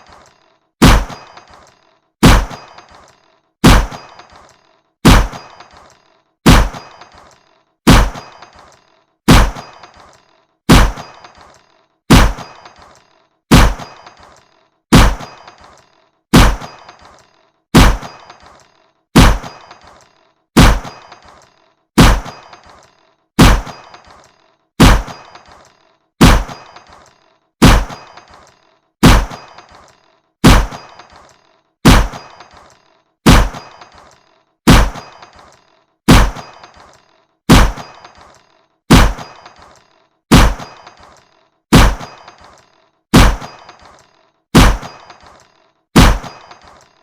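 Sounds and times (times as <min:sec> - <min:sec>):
toy gun shots with metallic ring: 0:00.0 - 0:47.0.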